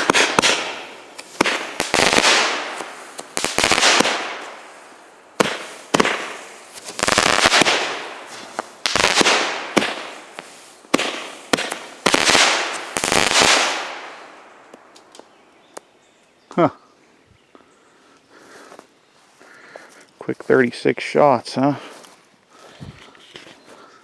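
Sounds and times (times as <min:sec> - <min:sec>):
firework bangs: 0:00.0 - 0:14.4
firework crackling hiss: 0:00.0 - 0:15.3.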